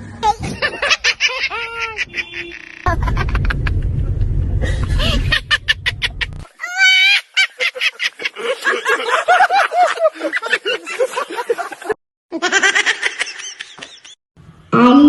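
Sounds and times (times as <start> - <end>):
person giggling: 1.4 - 3.9, 4.6 - 6.3.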